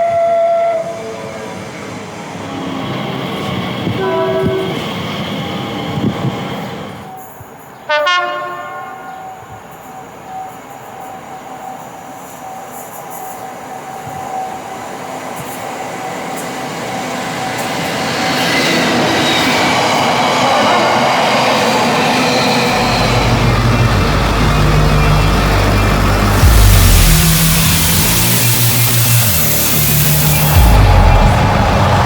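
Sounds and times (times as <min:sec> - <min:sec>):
train horn: 0:00.0 - 0:01.5, 0:03.8 - 0:04.8, 0:07.9 - 0:09.5
train running noise: 0:00.0 - 0:32.0.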